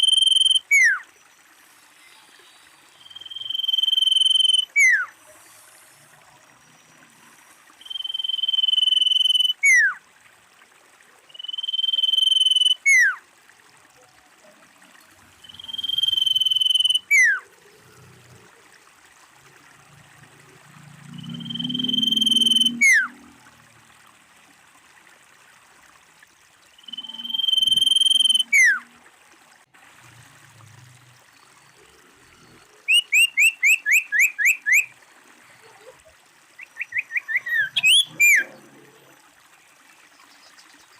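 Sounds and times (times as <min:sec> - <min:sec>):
bird whistling calls: 0:00.0 - 0:01.0, 0:03.0 - 0:05.1, 0:07.8 - 0:10.0, 0:11.4 - 0:13.2, 0:15.4 - 0:17.4, 0:21.3 - 0:23.1, 0:26.8 - 0:28.8, 0:32.9 - 0:34.9, 0:36.6 - 0:38.5.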